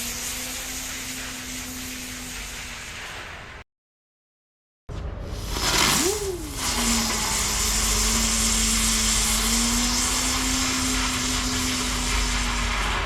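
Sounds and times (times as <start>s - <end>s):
firework hissing: 0.0s - 3.6s, 5.3s - 13.0s
spinning firework whirring hum: 0.0s - 3.6s, 5.3s - 13.0s.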